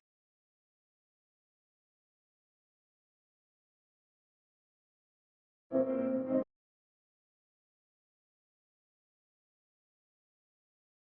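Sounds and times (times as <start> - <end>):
steady chord tone: 5.7 - 6.4.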